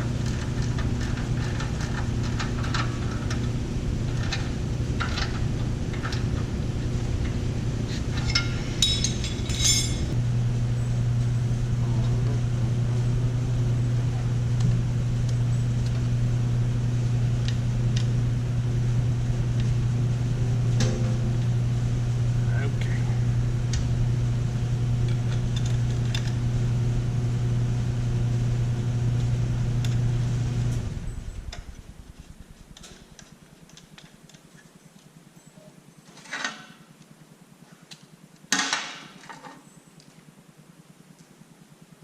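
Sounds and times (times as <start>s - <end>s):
engine running: 0.0s - 33.4s
sharp metallic clinks: 8.2s - 10.2s.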